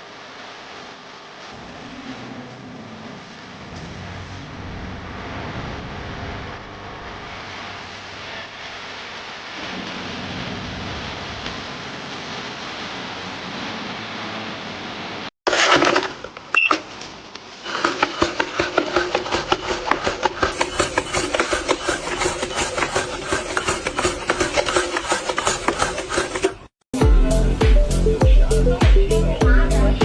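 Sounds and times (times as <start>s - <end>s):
machine clattering: 17.7s - 26.7s.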